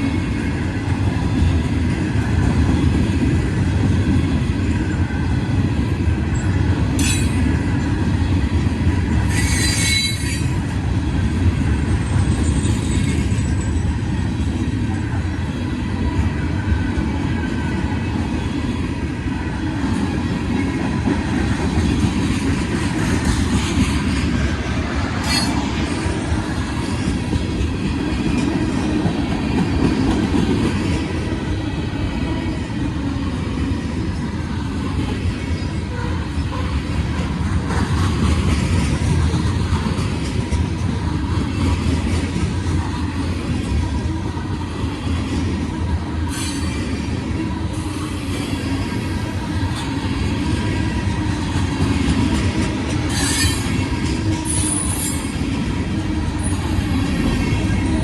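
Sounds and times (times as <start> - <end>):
train cars rumbling on rails: 0.0 - 58.0
high wheel squeals: 9.3 - 10.5, 25.2 - 25.6, 46.3 - 46.9, 53.1 - 53.8.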